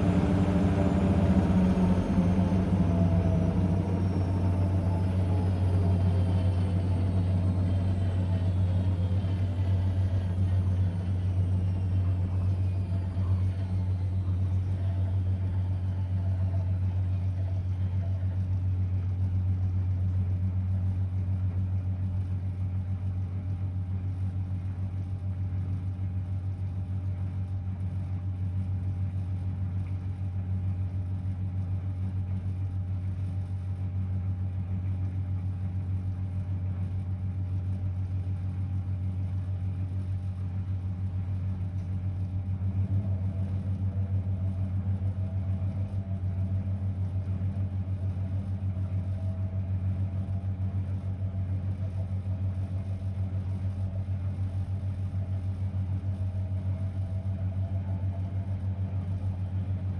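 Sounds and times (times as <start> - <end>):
washing machine motor whine: 0.0 - 18.6, 39.0 - 59.9
steady low hum: 0.0 - 59.9.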